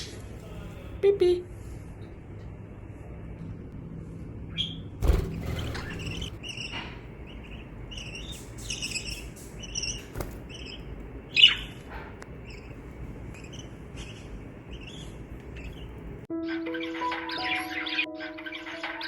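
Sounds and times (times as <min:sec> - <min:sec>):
budgerigar chirping: 0:05.6 - 0:19.0.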